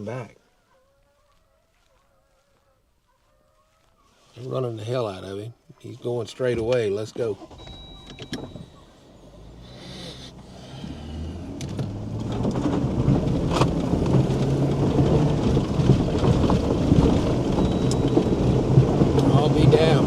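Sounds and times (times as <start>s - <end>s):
road rumble: 6.4s - 20.0s
pickup truck engine driving: 7.4s - 20.0s.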